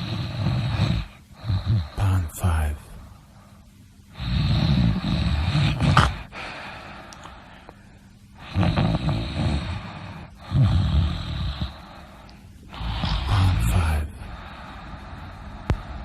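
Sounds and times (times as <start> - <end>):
person snoring loudly: 0.0 - 2.0, 4.2 - 6.3, 8.4 - 12.0, 12.7 - 14.9
quiet breathing: 0.0 - 16.0.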